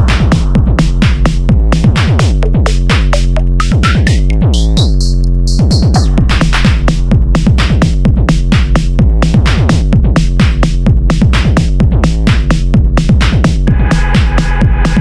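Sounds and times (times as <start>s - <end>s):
electronic music with drum-machine beat: 0.0s - 15.0s
rising synthesizer sweep: 13.7s - 15.0s.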